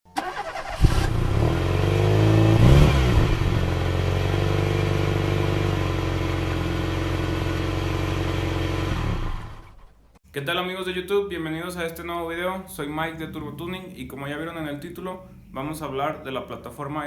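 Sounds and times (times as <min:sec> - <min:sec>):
car engine starting and idling: 0:00.1 - 0:10.2.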